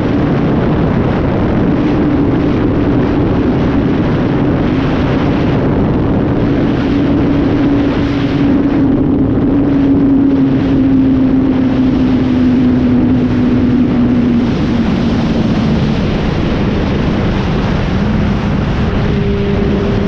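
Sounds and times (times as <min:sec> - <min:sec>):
motorcycle engine running: 0:00.0 - 0:20.0
wind noise on microphone: 0:00.0 - 0:20.0.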